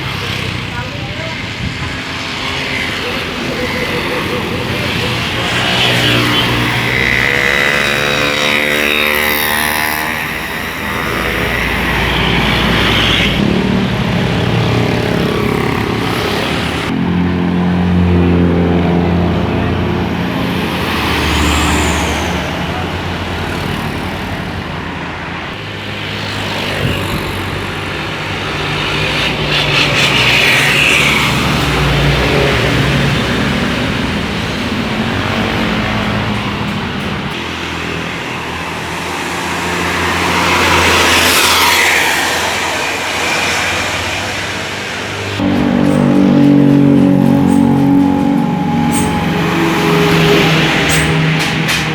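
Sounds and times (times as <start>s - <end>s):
road traffic passing: 0.0s - 51.9s
sliding tones: 39.9s - 51.9s.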